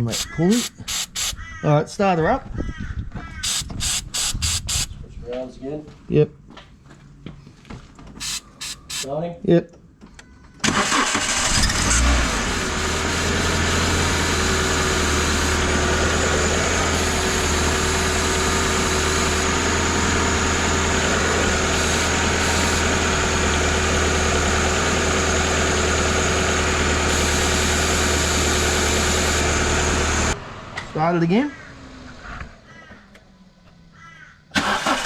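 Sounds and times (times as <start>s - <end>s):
car engine starting and idling: 10.6s - 32.7s, 34.5s - 35.0s
thin steady whine: 12.5s - 24.0s, 27.0s - 30.4s.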